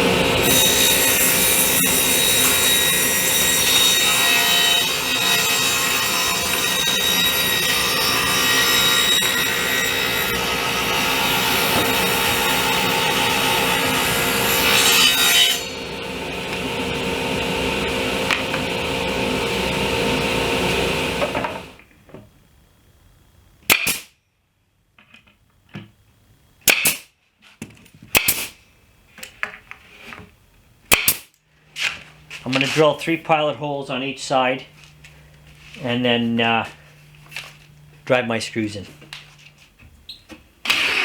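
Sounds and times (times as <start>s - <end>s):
table saw cutting panel: 0.0s - 21.8s, 40.6s - 41.0s
saw blade spinning down: 40.6s - 41.0s.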